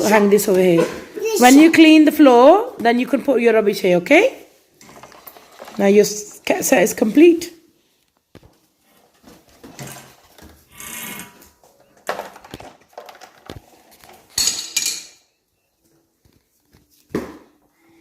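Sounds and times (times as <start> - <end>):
toy trolley clattering: 4.8 - 6.3, 11.7 - 15.1.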